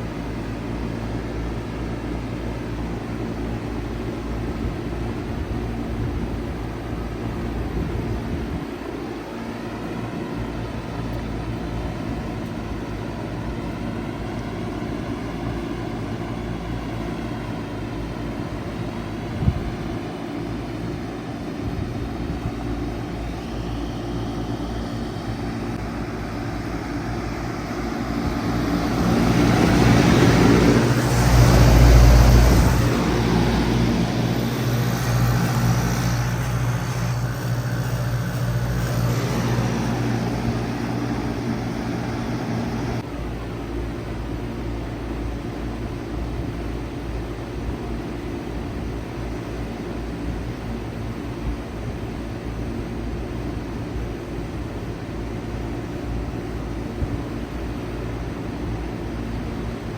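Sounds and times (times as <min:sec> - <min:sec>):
electrical hum: 0:00.0 - 0:59.9
heat pump running rumble: 0:00.0 - 0:59.9.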